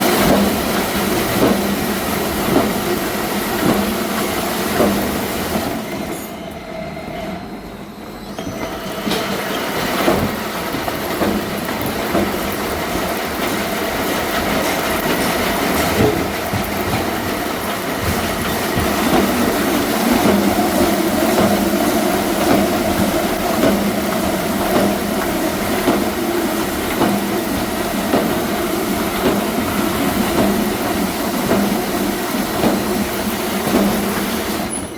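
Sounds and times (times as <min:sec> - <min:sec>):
lathe mechanical clatter and squeal: 0:00.0 - 0:34.9
scattered knocks: 0:14.5 - 0:33.0.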